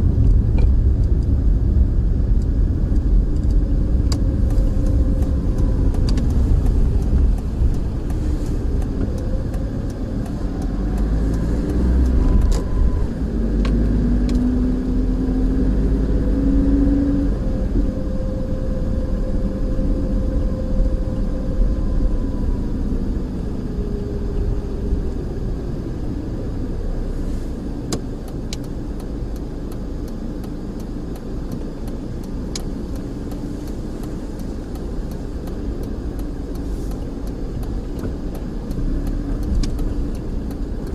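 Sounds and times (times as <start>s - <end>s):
hum climbing in pitch: 0.0s - 27.0s
car engine and road rumble: 0.0s - 40.9s.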